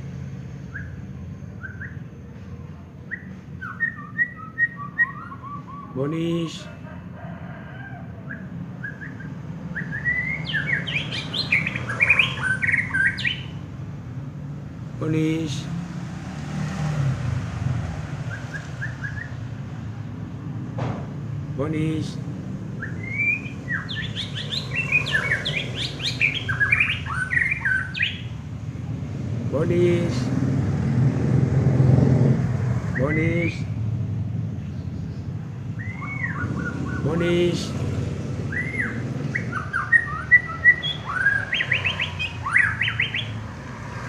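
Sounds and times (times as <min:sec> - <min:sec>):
bird singing whistled song: 0:00.6 - 0:02.2, 0:03.0 - 0:06.2, 0:08.3 - 0:13.6, 0:18.3 - 0:19.4, 0:22.8 - 0:28.4, 0:32.9 - 0:33.8, 0:35.8 - 0:37.2, 0:38.5 - 0:43.4.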